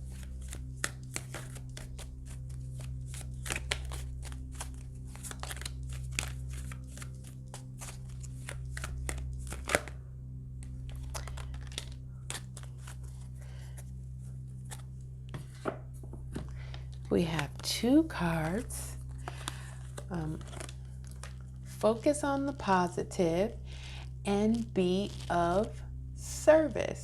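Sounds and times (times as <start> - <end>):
cards being shuffled: 0.0 - 10.0, 10.6 - 14.0, 14.6 - 17.7, 18.5 - 21.8, 24.5 - 25.8
low electrical hum: 0.0 - 27.0.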